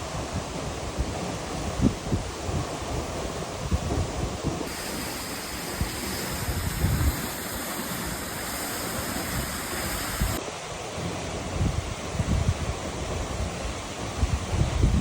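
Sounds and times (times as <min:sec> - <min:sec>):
wind buffeting microphone: 0:00.0 - 0:10.4, 0:11.5 - 0:15.0
waterfall rushing: 0:04.7 - 0:11.4.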